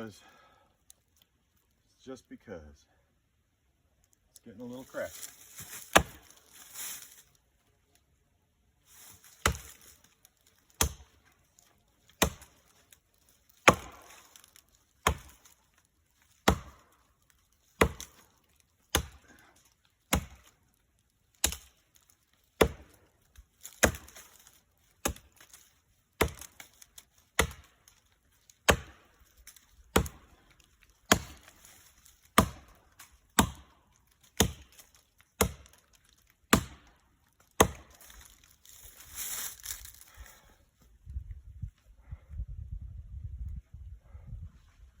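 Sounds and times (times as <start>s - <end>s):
axe chopping into tree trunk: 5.4s - 7.1s, 9.1s - 11.2s, 12.1s - 12.7s, 13.6s - 15.6s, 16.3s - 17.0s, 17.8s - 18.3s, 18.9s - 19.4s, 20.1s - 20.6s, 21.4s - 23.0s, 23.6s - 25.6s, 26.2s - 27.8s, 28.6s - 35.9s, 36.5s - 36.9s, 37.5s - 38.4s.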